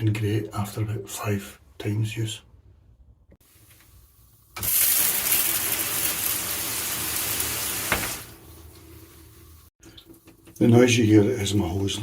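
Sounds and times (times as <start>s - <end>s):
leaking hose hissing: 3.4s - 10.6s
shower click: 3.6s - 10.8s
shower head spraying water: 4.5s - 9.7s.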